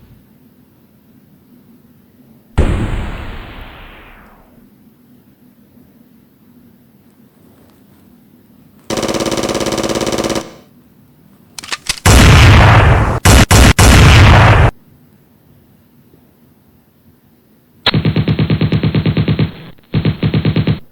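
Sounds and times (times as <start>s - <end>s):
automatic gunfire: 8.9s - 10.7s, 11.6s - 14.7s, 17.9s - 20.9s.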